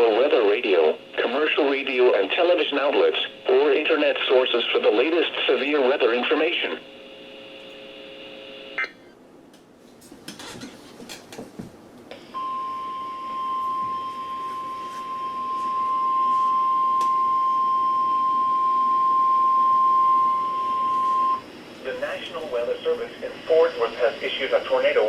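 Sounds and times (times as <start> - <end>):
steady high warning beep: 12.3 - 21.5.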